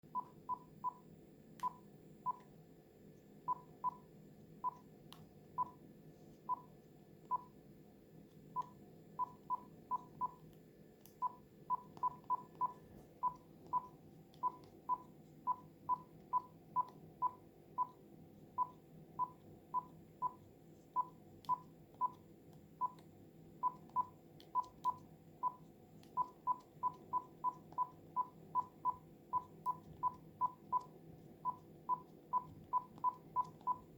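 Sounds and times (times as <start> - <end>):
telephone keypad beeps: 11.2 - 17.9, 31.5 - 33.9.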